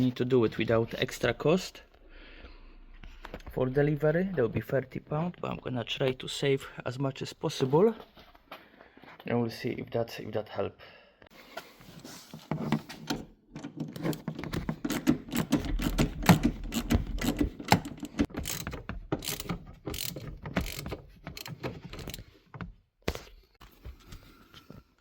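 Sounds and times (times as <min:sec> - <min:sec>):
ratchet wrench clicking: 0:15.0 - 0:22.2.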